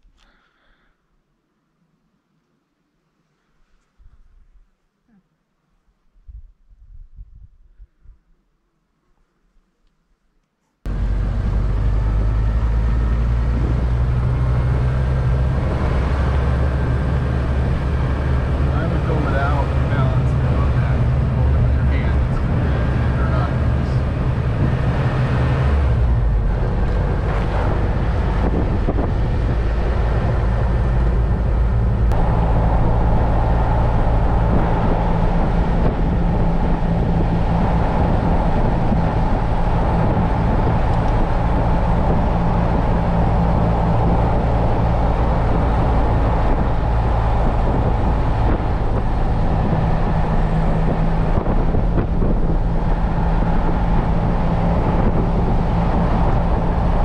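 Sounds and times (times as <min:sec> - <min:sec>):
car engine and road noise: 0:10.9 - 0:57.0.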